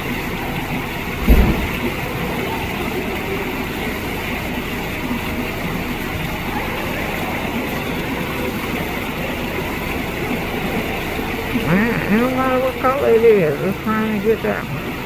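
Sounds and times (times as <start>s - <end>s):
steady rushing noise: 1.0s - 3.6s
low thump: 1.2s - 2.1s.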